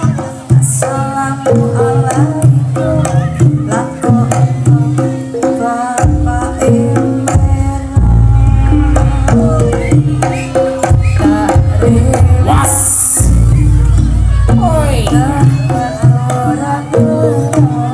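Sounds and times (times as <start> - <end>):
hand drum strokes: 0.0 - 17.9
struck pitched melody notes: 2.7 - 17.9
heavy low rumble: 11.6 - 16.2.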